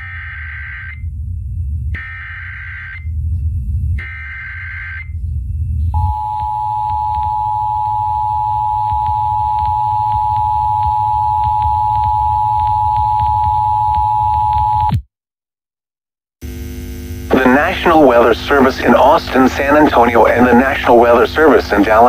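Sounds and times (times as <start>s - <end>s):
harsh digital data screech: 0.0s - 1.0s, 2.0s - 3.1s, 4.0s - 5.2s
low hum: 0.0s - 14.9s, 16.4s - 22.0s
two-tone alert signal: 6.0s - 14.9s.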